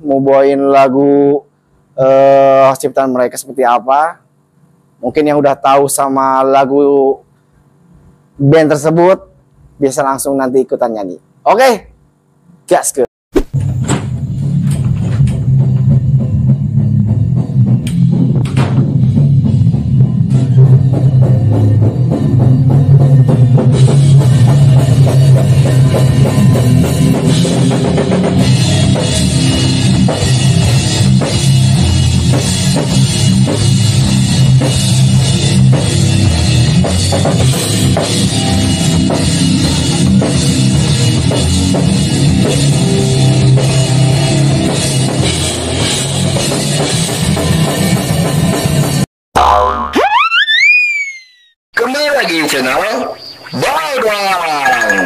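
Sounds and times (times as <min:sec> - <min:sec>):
bass drum: 0:13.4 - 0:49.8
loud rock music: 0:15.5 - 0:49.0.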